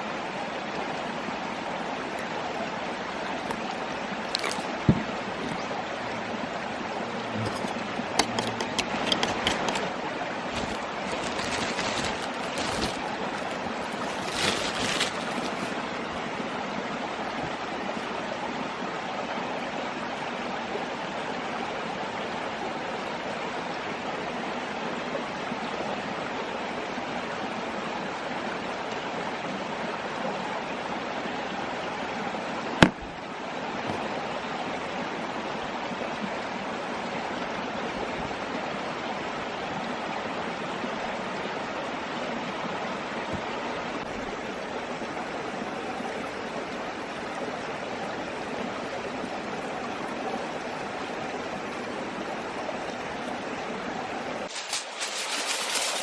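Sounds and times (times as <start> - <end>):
stream babbling: 0.0 - 56.0.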